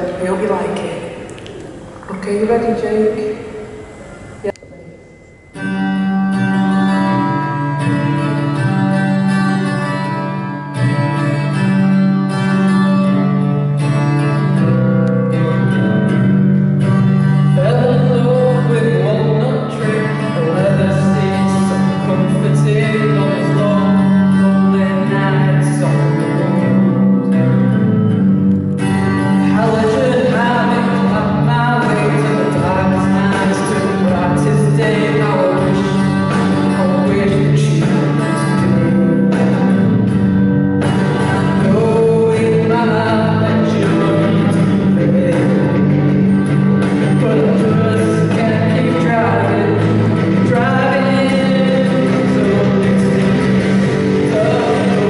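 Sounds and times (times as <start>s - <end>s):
guitar accompaniment: 0.0s - 55.0s
man singing: 15.2s - 16.2s, 17.2s - 27.7s, 29.4s - 39.9s, 41.0s - 46.2s, 47.0s - 55.0s.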